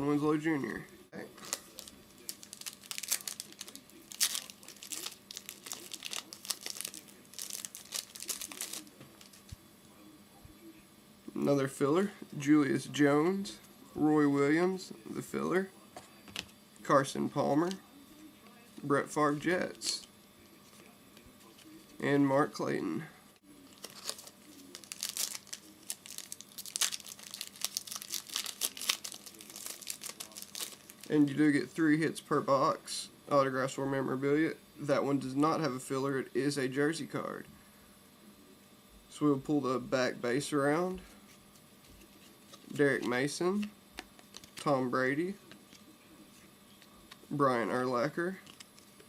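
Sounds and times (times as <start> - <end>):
card pack wrapper crinkling and tearing: 1.4 - 9.5, 23.7 - 31.1, 44.2 - 44.7, 48.3 - 48.9.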